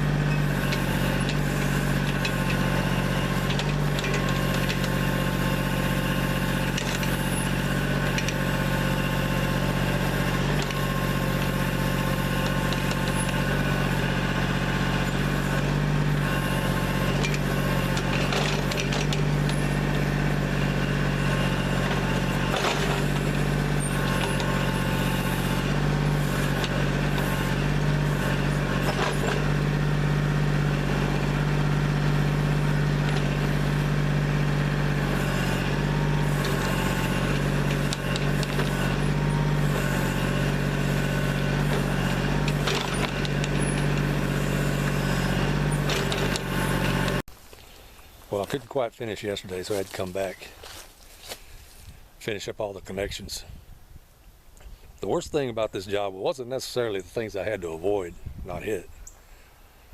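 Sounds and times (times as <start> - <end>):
diesel engine running: 0.0 - 59.9
machine knocks and clanks: 16.6 - 20.0, 21.5 - 25.5.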